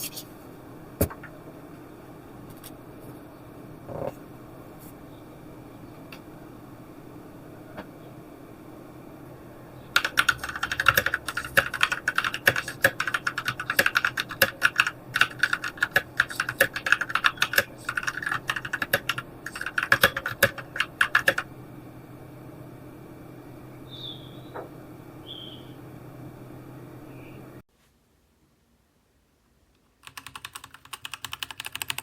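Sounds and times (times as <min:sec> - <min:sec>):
mechanical keyboard typing: 0:10.0 - 0:21.5, 0:30.0 - 0:32.0.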